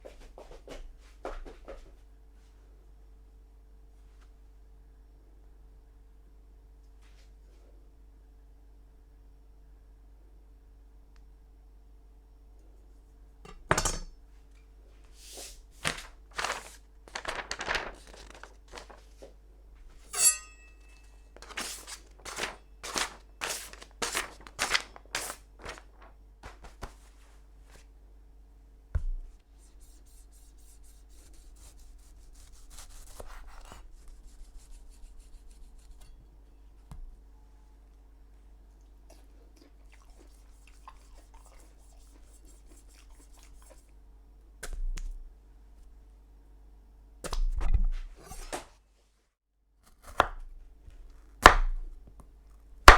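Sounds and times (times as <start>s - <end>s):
short metallic ring: 20.1s - 21.2s.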